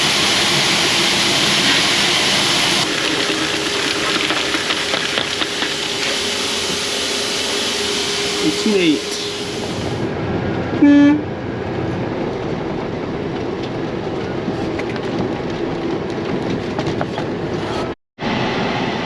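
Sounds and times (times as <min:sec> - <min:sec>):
farm vehicle engine: 0:00.0 - 0:17.6
short horn toot: 0:10.8 - 0:11.2.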